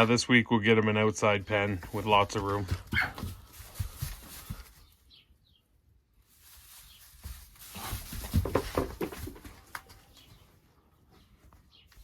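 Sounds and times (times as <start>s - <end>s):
rustling in straw bedding: 3.3s - 5.1s, 5.9s - 9.1s.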